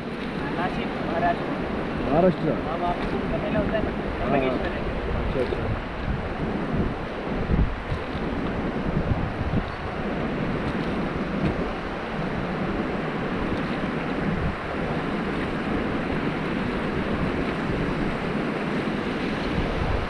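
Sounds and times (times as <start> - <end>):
rushing river water: 0.0 - 20.0
wind noise on microphone: 0.0 - 20.0.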